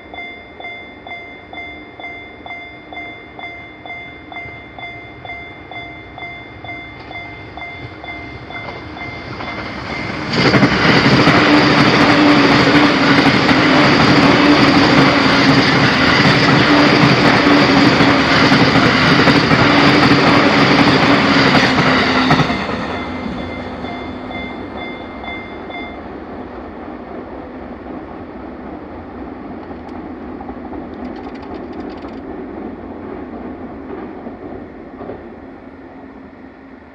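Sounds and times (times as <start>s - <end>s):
level crossing warning bell: 0.0s - 26.2s
train passing loudly: 0.0s - 31.0s, 32.2s - 36.9s.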